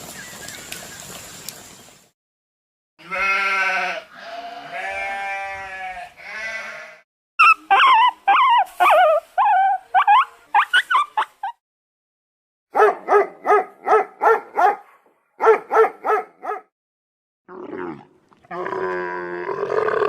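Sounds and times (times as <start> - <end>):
drawn-out bleats: 3.0 - 7.0.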